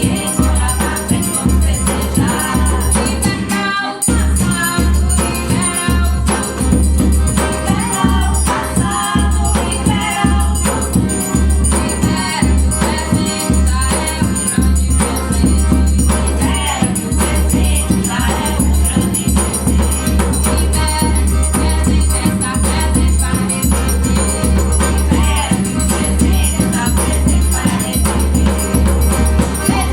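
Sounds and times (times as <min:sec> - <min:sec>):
accordion: 0:00.0 - 0:29.9
guitar: 0:00.0 - 0:29.9
jingling triangle: 0:00.0 - 0:29.9
person singing: 0:00.0 - 0:29.9
deep bass drum: 0:29.7 - 0:29.9.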